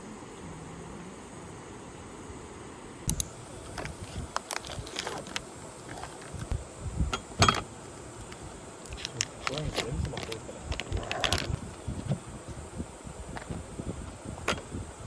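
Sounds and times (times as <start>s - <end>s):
objects clicking and knocking: 8.3s - 11.6s.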